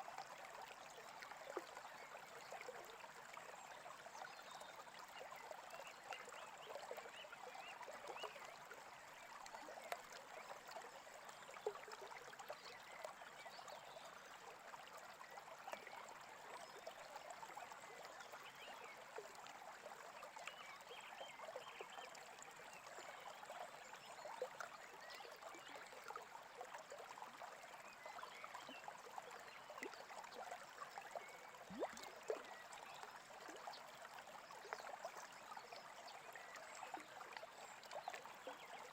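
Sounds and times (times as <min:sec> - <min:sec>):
small stream trickling: 0:00.0 - 0:38.9.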